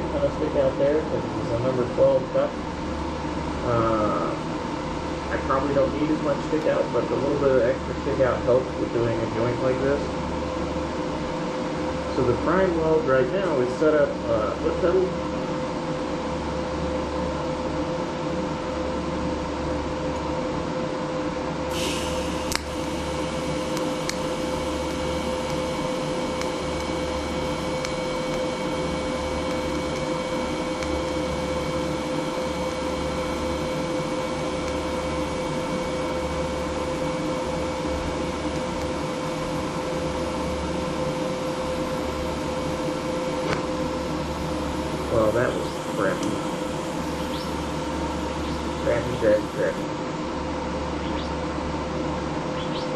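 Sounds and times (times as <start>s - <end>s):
welder machine hum: 0.0s - 52.9s
welding arc hiss with whine: 0.0s - 52.9s
welding arc striking click: 21.7s - 31.2s, 34.5s - 35.0s, 45.7s - 49.6s.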